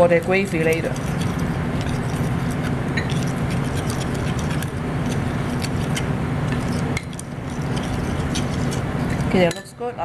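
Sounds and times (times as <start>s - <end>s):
steady low hum: 0.0s - 10.0s
spoon clinking against bowl: 9.4s - 9.8s.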